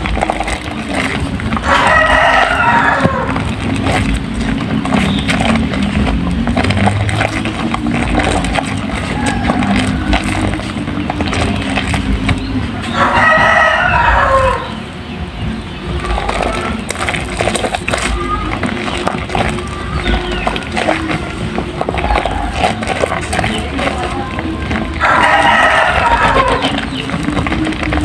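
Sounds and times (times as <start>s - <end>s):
small crackling clicks: 0.0s - 28.0s
rooster crowing: 1.5s - 4.0s, 7.5s - 15.0s, 19.6s - 27.9s.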